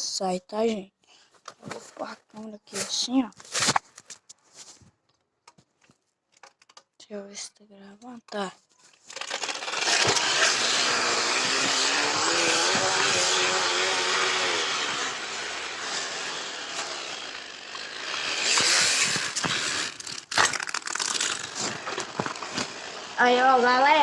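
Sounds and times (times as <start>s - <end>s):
plastic cup rattling on bicycle wheel: 18.7s - 22.5s.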